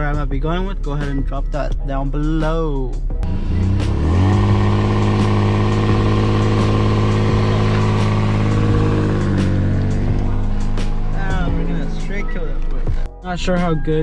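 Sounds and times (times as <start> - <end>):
car engine starting and idling: 3.2 - 13.1.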